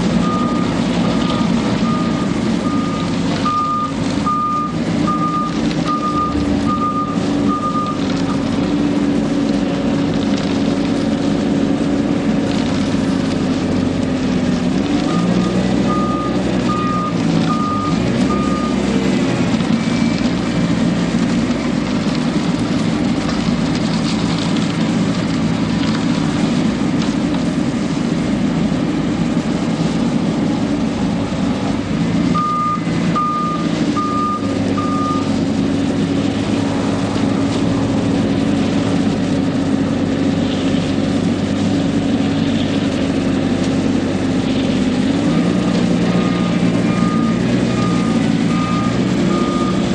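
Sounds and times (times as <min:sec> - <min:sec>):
truck engine running: 0:00.0 - 0:49.9
reversing alarm beeping: 0:00.2 - 0:00.7, 0:01.3 - 0:08.4, 0:15.1 - 0:18.8, 0:32.3 - 0:35.3, 0:46.2 - 0:49.9.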